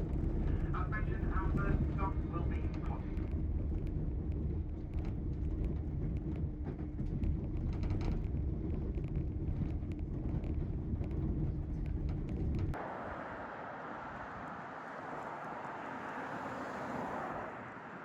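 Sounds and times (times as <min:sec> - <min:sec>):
train rumble inside carriage: 0:00.0 - 0:13.0
constant hum: 0:00.0 - 0:18.0.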